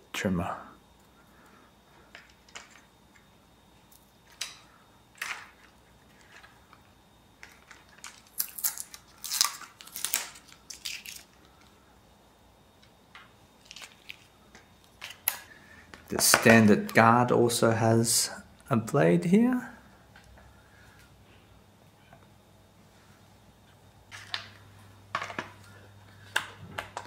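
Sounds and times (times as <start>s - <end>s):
plastic parts clicking and knocking: 26.3s - 27.0s.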